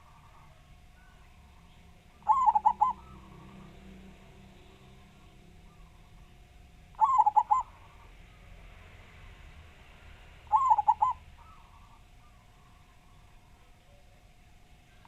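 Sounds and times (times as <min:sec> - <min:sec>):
dove cooing: 0:00.0 - 0:04.0, 0:04.9 - 0:08.1, 0:10.5 - 0:14.0
faint bird calls: 0:00.0 - 0:08.6, 0:10.4 - 0:14.2.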